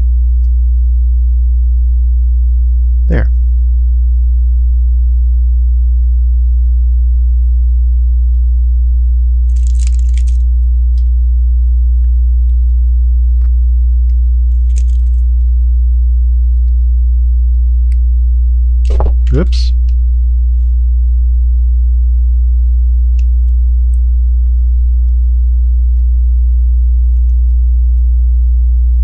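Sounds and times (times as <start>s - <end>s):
low electrical hum: 0.0s - 29.0s
plastic lego pieces rattling: 9.5s - 10.4s, 14.6s - 15.2s.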